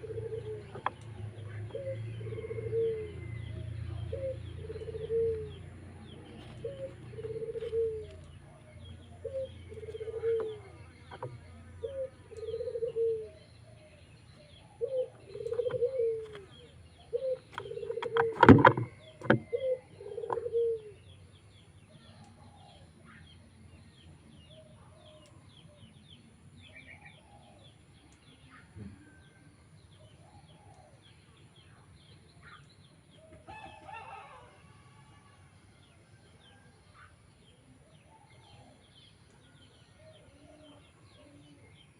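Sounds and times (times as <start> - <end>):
pigeon cooing: 0.0 - 21.1
bird calls and chirps: 0.0 - 41.9.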